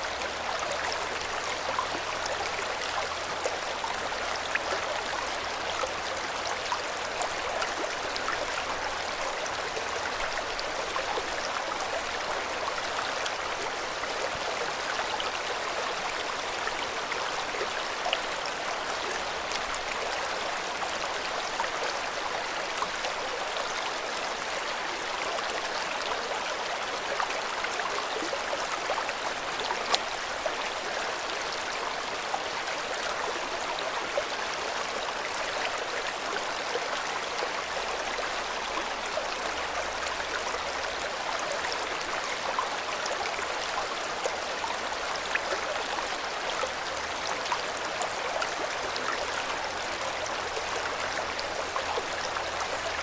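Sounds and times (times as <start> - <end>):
river flowing over rocks: 0.0 - 53.0.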